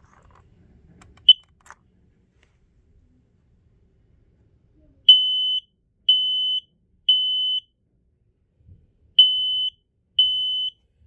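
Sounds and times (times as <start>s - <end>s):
smoke alarm beeping: 5.1s - 7.7s, 9.2s - 10.8s.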